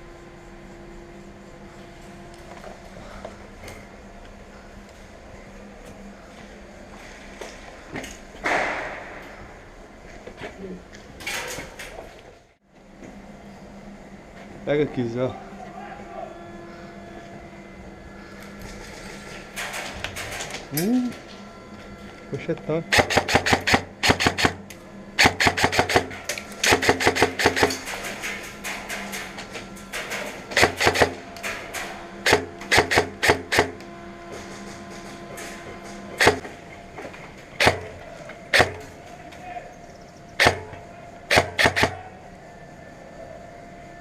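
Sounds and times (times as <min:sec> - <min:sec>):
airsoft guns firing: 0:22.9 - 0:24.6, 0:25.2 - 0:28.5, 0:29.9 - 0:33.8, 0:36.2 - 0:36.5, 0:37.6 - 0:37.9, 0:38.5 - 0:38.9, 0:40.4 - 0:42.1.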